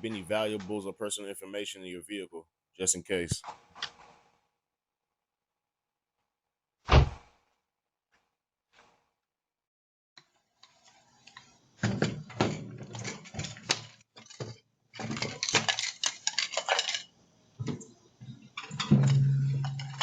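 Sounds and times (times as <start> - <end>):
hard objects rattling and clinking: 11.9 - 17.2, 18.6 - 20.0.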